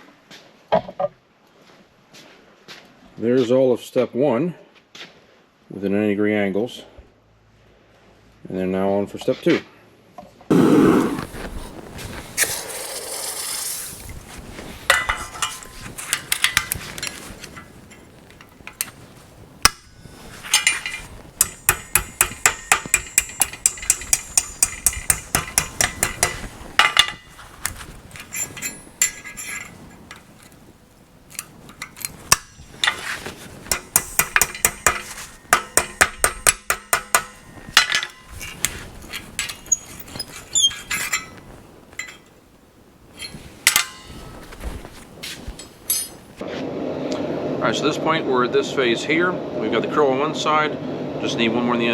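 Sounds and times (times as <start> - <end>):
hammer ringing on steel: 20.6 - 27.2, 33.7 - 38.5.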